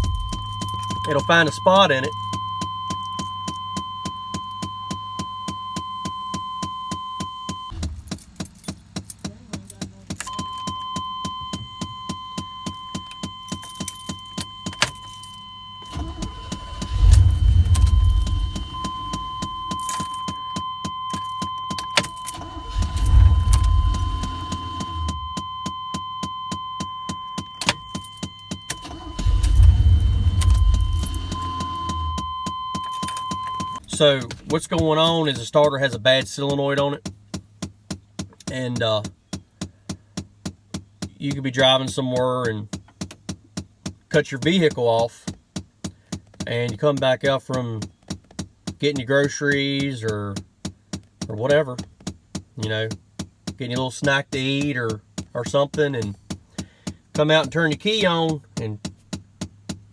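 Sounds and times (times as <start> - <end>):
starter cranking engine: 0.0 - 2.1, 7.7 - 10.3, 15.8 - 20.1, 21.8 - 25.5, 27.6 - 35.4
steady warning tone: 0.0 - 8.2, 10.2 - 35.4
fast regular ticking: 15.9 - 20.4, 21.8 - 25.4.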